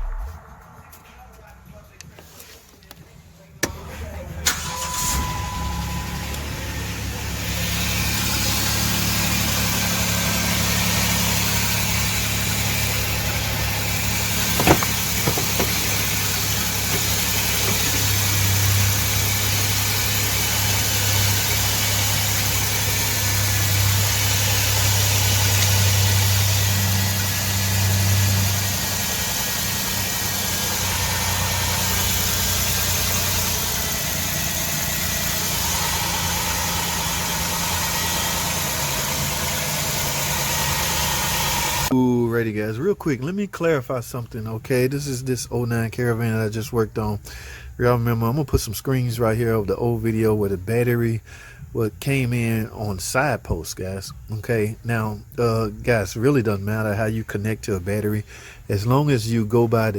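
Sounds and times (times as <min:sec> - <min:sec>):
van engine idling: 0:03.4 - 0:42.0.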